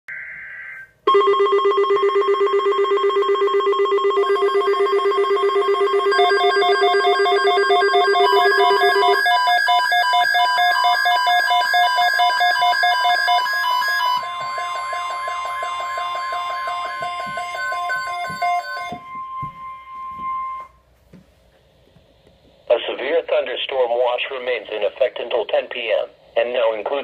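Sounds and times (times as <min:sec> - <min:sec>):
pulsing electronic alert tones: 0:00.1 - 0:09.4, 0:11.3 - 0:20.7
high beep: 0:14.2 - 0:20.8.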